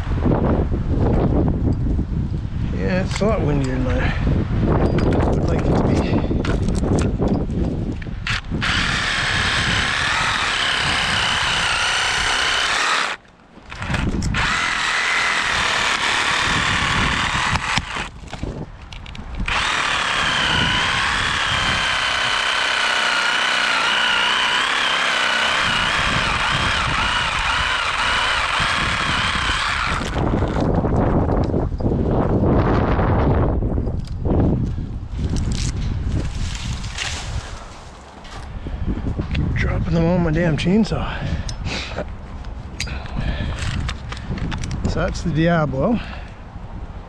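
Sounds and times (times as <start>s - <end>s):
reciprocating saw cutting branch: 8.3s - 18.2s, 19.4s - 30.6s.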